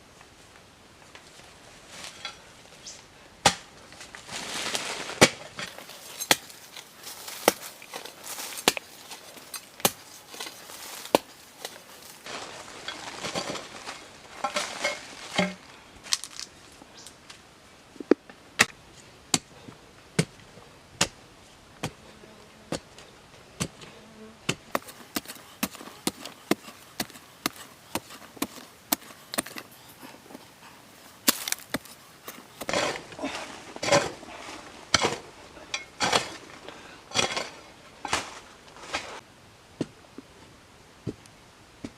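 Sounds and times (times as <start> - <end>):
rustling handling noise: 3.9 - 16.6, 24.7 - 35.3
blade chopping strokes: 24.5 - 30.6.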